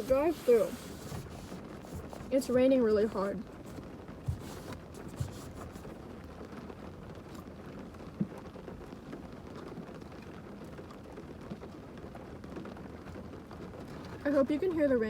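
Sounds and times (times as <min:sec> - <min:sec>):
soft knocks: 0:00.0 - 0:02.4, 0:03.2 - 0:05.9
heavy rain on car roof: 0:00.0 - 0:15.0.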